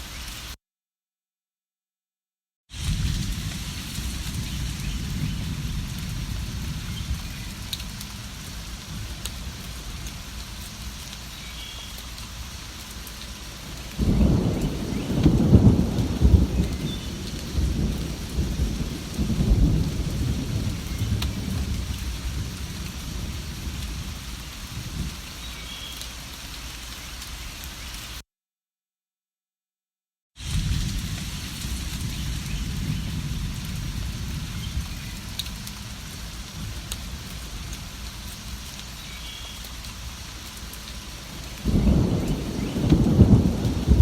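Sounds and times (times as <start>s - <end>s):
steady rain: 0.0s - 0.6s, 2.7s - 28.2s, 30.4s - 44.0s
thunder rolling: 2.8s - 10.3s, 13.6s - 25.2s, 30.4s - 38.0s, 41.3s - 44.0s.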